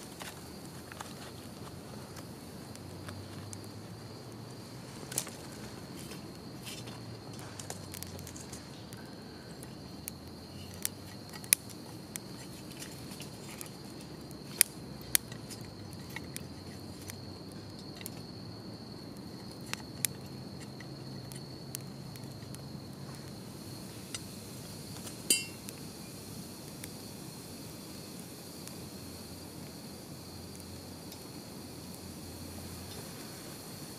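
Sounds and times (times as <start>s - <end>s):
crickets trilling: 0.0s - 33.9s
wood fire crackling in stove: 0.0s - 33.9s
ringing snap from fire: 7.5s - 22.6s, 24.0s - 27.0s.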